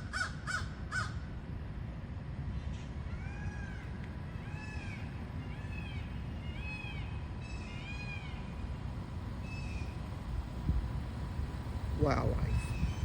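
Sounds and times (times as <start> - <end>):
crow cawing: 0.0 - 1.2.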